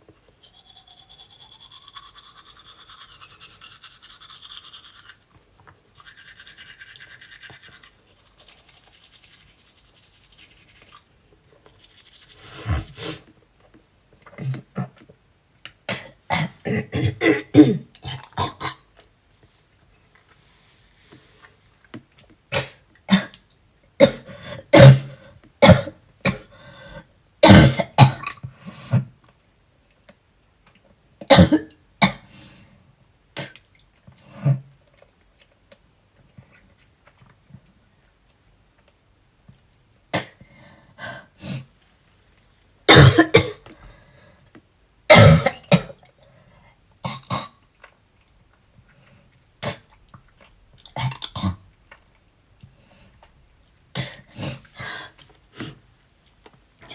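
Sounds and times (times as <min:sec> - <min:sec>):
woman coughing: 0:42.9 - 0:43.6.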